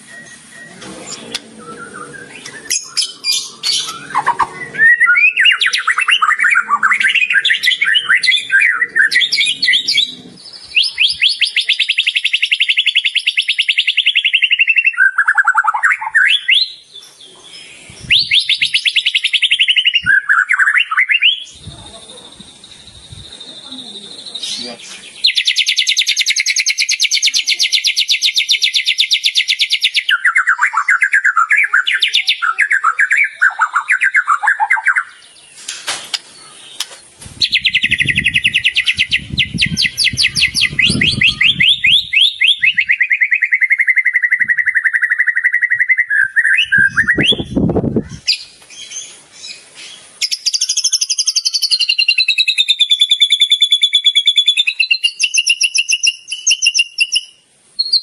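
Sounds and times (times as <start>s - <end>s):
bird chattering: 0.0s - 16.8s, 18.1s - 35.2s, 36.1s - 48.5s
songbird trilling: 0.0s - 58.0s.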